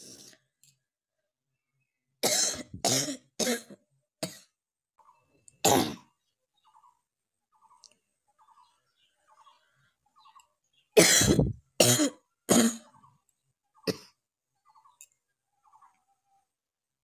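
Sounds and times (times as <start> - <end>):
person coughing: 2.2 - 4.5, 5.7 - 6.1, 11.0 - 12.9.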